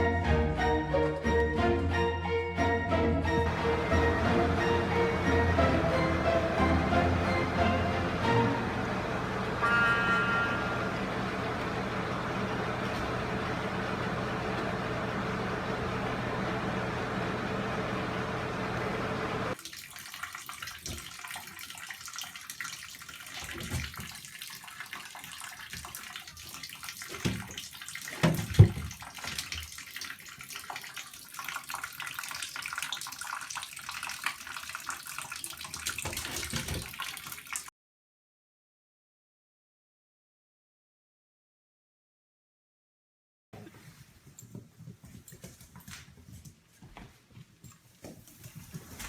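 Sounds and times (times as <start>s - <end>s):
steady hum: 3.5s - 19.6s
water running and splashing: 19.5s - 37.7s
knocks and thumps: 28.2s - 29.0s.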